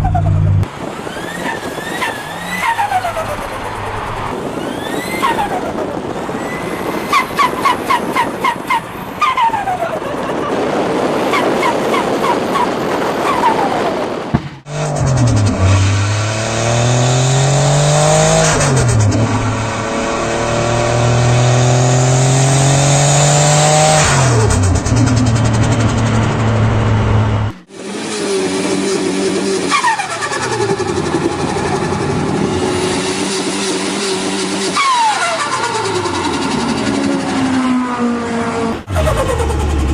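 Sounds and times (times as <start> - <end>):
car engine accelerating: 13.9 - 39.9.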